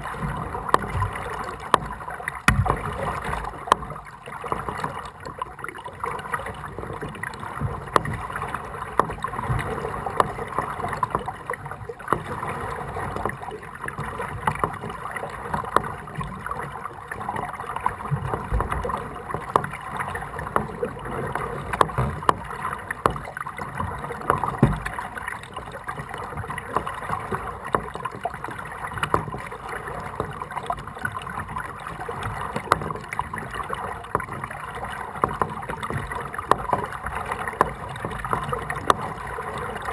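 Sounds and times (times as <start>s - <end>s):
small knocks and clicks: 0.0s - 5.5s, 6.3s - 39.9s
paddle splashing water: 0.0s - 39.9s.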